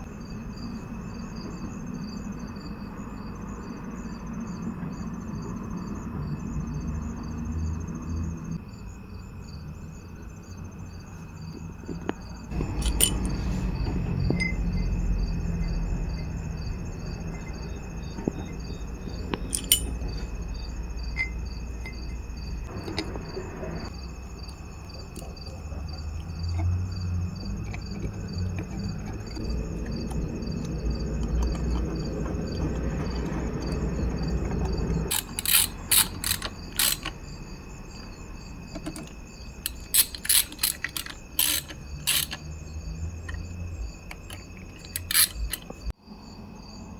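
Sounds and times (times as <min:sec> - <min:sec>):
crickets chirping: 0:00.0 - 0:46.9
sharp clicks from motor work: 0:34.6 - 0:37.2, 0:38.7 - 0:42.6, 0:43.2 - 0:45.9.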